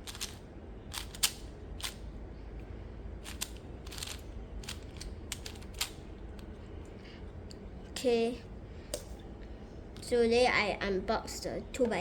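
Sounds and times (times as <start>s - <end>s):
plastic puzzle cube clicking: 0.1s - 2.0s.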